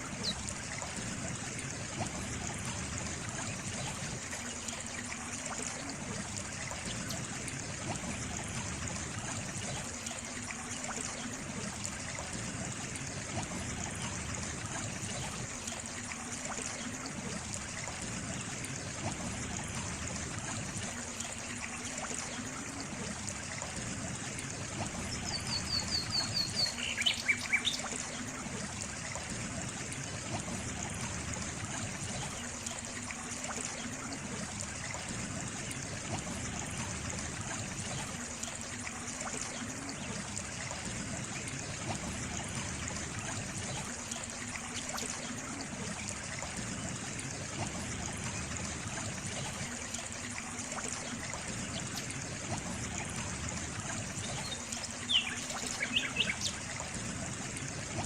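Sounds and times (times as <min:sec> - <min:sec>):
stream trickling: 0:00.0 - 0:58.0
bird chirping: 0:54.4 - 0:56.5.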